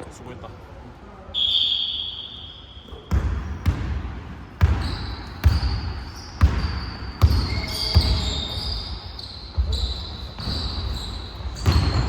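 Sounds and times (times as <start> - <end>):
basketball bouncing on gym floor: 2.9 - 12.0.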